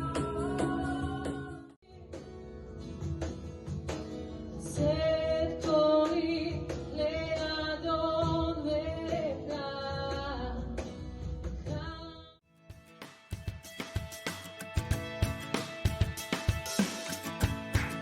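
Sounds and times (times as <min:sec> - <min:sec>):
woman singing: 0:00.0 - 0:02.3, 0:04.6 - 0:10.9, 0:11.6 - 0:12.4
plucked instrumental accompaniment: 0:12.6 - 0:18.0.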